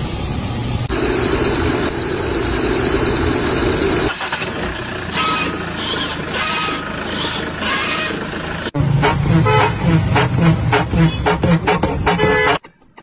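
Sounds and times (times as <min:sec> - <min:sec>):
high whine over rumble: 0:00.0 - 0:04.1
road noise: 0:00.0 - 0:12.4.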